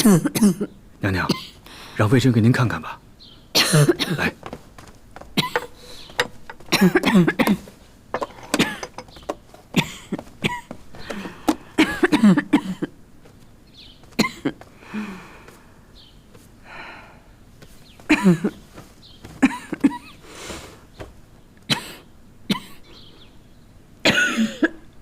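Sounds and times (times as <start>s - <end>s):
woman coughing hard: 0.0s - 0.7s, 3.6s - 4.3s, 5.4s - 5.8s, 6.6s - 7.7s, 8.3s - 9.0s, 9.8s - 10.7s, 11.8s - 13.0s, 14.2s - 14.6s, 18.1s - 18.6s, 19.4s - 20.2s, 21.7s - 22.8s, 24.0s - 24.8s.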